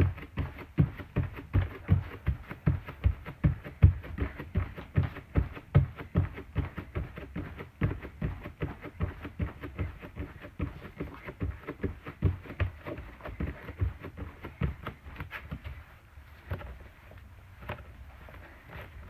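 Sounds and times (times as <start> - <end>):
heartbeat thumps: 0.0 - 15.9.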